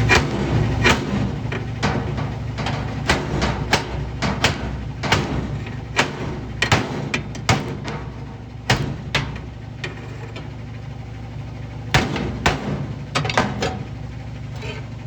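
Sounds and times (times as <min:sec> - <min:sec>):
metal bar knocking on sheet metal: 0:00.1 - 0:10.0.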